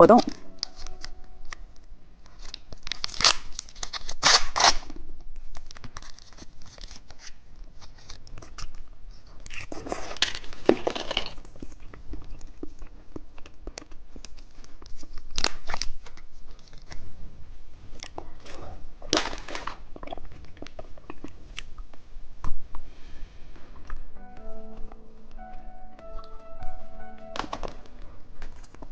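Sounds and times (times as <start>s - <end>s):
plastic wrapping crinkling: 2.2s - 8.7s.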